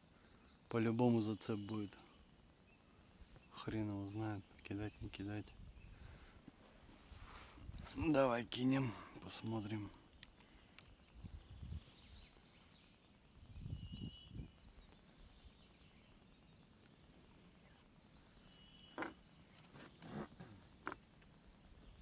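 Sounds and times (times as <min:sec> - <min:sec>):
faint bird calls: 0:15.9 - 0:21.2.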